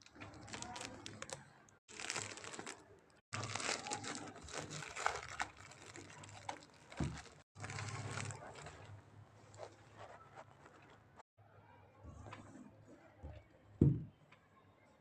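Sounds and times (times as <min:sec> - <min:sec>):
packaging crinkling: 0:00.0 - 0:08.9.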